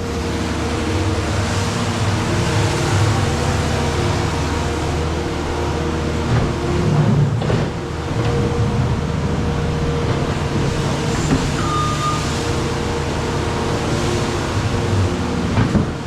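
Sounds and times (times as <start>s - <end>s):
skid loader engine running: 0.0s - 16.0s
short high beep: 11.6s - 12.3s.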